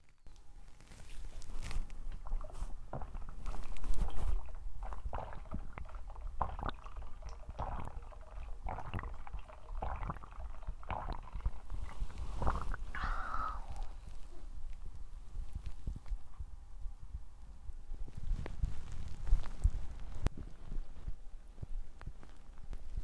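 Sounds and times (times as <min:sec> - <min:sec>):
gurgle: 0:02.1 - 0:14.0
person swallowing gulps: 0:02.1 - 0:14.5.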